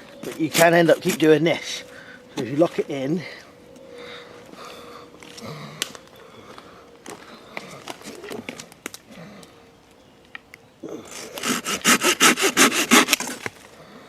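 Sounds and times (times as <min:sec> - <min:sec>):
handsaw sawing branch: 0:11.1 - 0:13.5.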